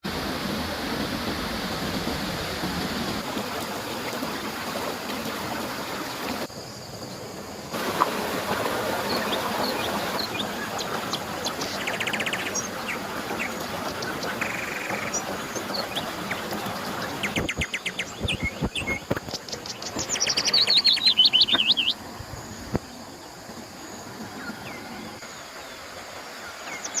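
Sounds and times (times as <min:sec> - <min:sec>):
river flowing: 0:00.0 - 0:27.0
small birds chirping: 0:09.0 - 0:23.4.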